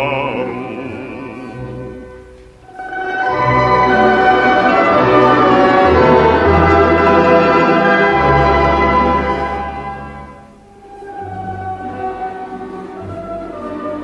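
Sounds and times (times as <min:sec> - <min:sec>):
folk instrument orchestra playing: 0:00.0 - 0:14.0.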